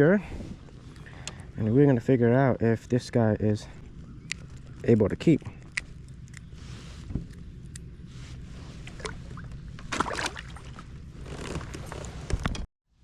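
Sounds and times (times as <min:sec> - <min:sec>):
steady low rumble: 0:00.0 - 0:12.6
rustling splash: 0:08.7 - 0:11.6.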